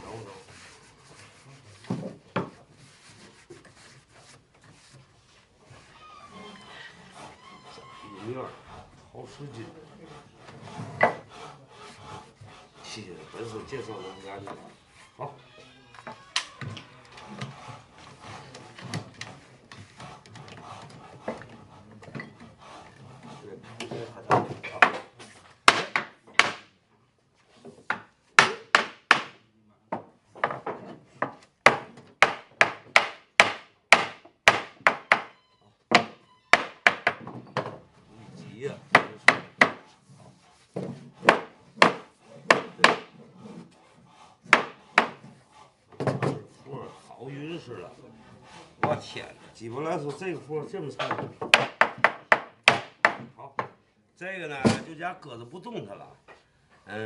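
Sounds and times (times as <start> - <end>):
faint rubbing: 0.0 - 15.4
wooden parts and clamps knocking: 10.4 - 11.3, 23.8 - 26.7, 27.8 - 38.0, 38.9 - 39.8, 40.7 - 43.6, 44.4 - 46.5, 50.9 - 53.8.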